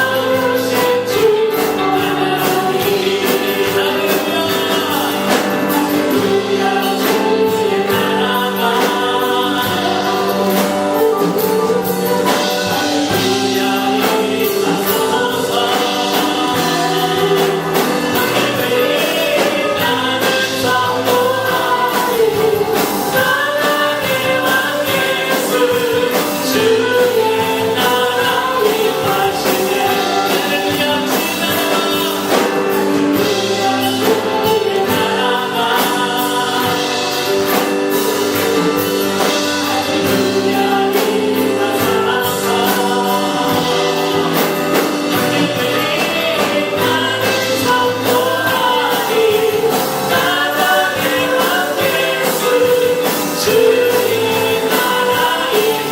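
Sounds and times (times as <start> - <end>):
group singing a praise song: 0.0 - 55.9
instrumental accompaniment with beat: 0.0 - 55.9.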